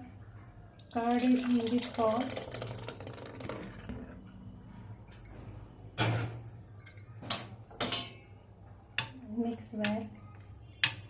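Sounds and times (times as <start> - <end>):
curd pouring into pot: 0.8 - 4.2
utensils clinking against dish: 5.1 - 8.3, 10.6 - 11.0.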